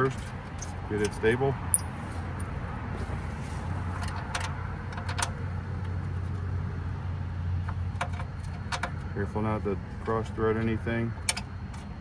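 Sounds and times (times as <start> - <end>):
steady low hum: 0.0 - 4.2.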